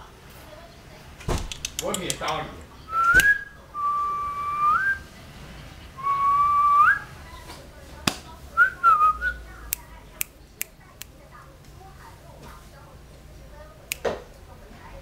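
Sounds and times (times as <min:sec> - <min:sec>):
sharp click: 0:01.4 - 0:02.4
person whistling: 0:03.0 - 0:05.0, 0:06.0 - 0:07.0.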